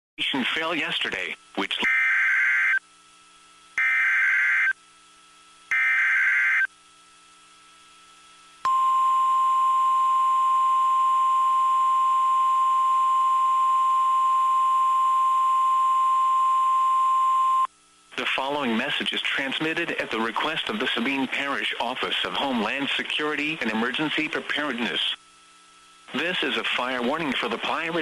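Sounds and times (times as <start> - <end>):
steady weather radio alert tone: 1.0 - 2.8.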